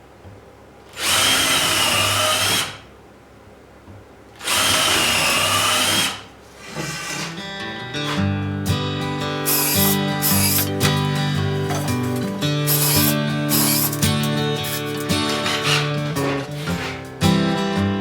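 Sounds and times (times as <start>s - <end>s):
electric drill whining: 1.0s - 2.8s, 4.4s - 7.3s, 9.5s - 10.8s, 12.6s - 17.0s.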